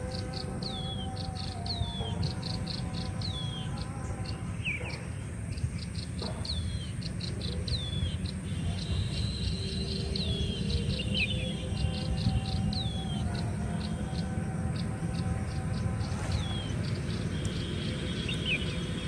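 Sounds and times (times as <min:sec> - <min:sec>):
insects chirping in pulses: 0:00.0 - 0:19.0
high-pitched insect drone: 0:07.0 - 0:19.0.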